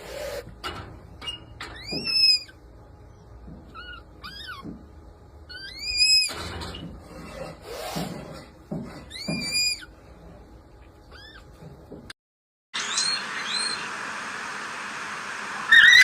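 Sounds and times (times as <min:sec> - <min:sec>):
red panda squealing: 0:05.5 - 0:06.3, 0:15.7 - 0:16.0.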